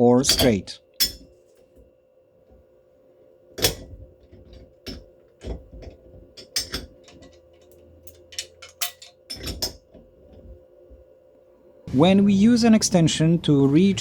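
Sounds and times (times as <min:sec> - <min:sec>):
faint steady hum: 0:00.0 - 0:14.0
metal tools clinking: 0:00.1 - 0:01.8, 0:03.6 - 0:11.0.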